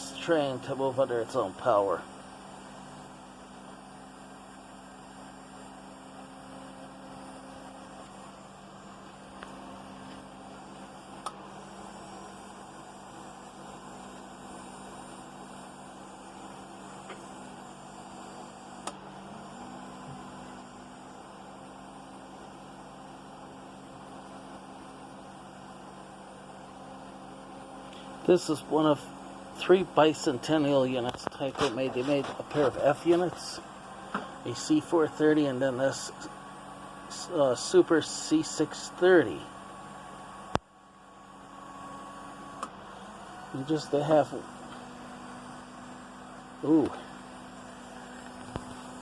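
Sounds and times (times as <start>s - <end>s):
model train motor humming: 27.9s - 39.8s.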